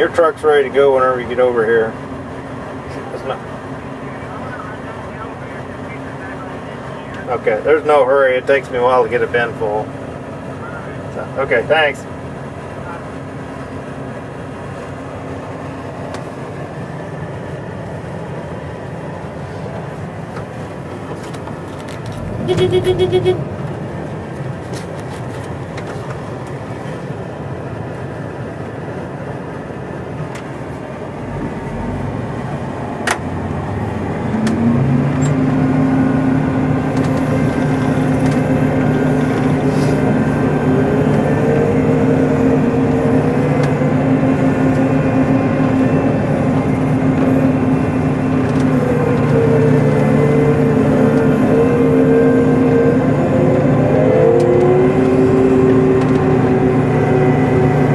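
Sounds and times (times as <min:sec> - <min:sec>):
combine harvester running: 0:00.0 - 0:57.9
rapid beeps: 0:22.4 - 0:23.4.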